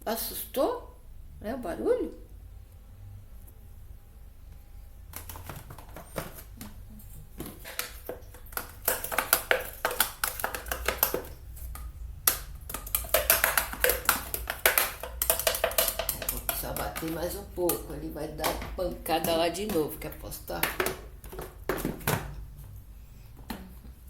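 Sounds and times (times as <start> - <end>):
cat clawing at plastic: 5.1 - 6.7.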